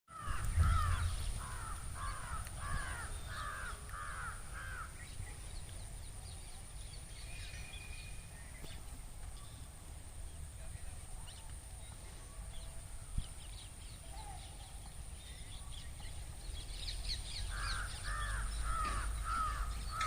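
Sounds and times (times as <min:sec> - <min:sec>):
low rumble: 0:00.2 - 0:03.9.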